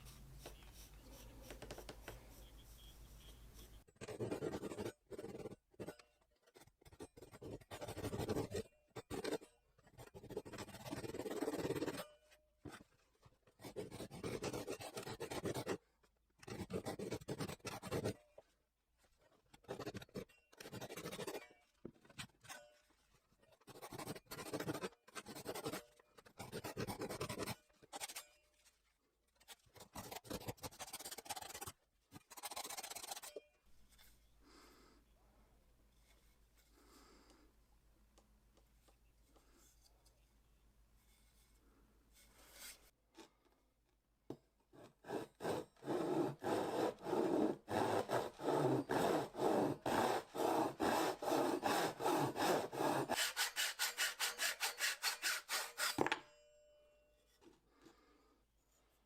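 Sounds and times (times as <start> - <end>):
blade scraping wood: 45.0 - 56.2.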